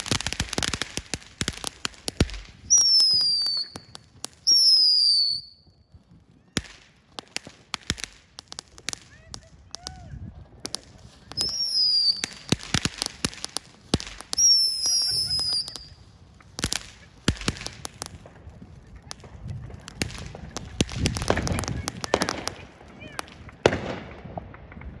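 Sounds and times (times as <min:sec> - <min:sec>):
firework pops and crackles: 0:00.0 - 0:25.0
firework whistles falling in pitch: 0:02.6 - 0:05.7, 0:11.2 - 0:13.0, 0:14.2 - 0:16.0.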